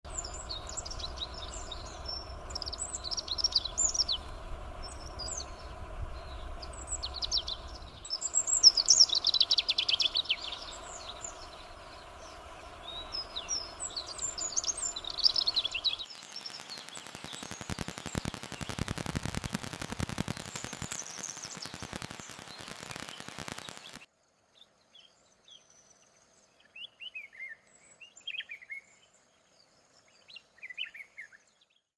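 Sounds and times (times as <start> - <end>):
small songbirds chirping: 0.0 - 31.9
steady low hum: 0.1 - 16.0
rushing crackly noise: 0.1 - 24.1.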